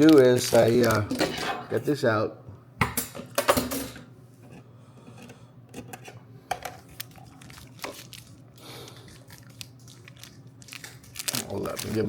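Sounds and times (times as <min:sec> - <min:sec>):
plastic packaging crinkling: 0:00.0 - 0:01.1, 0:06.8 - 0:12.0.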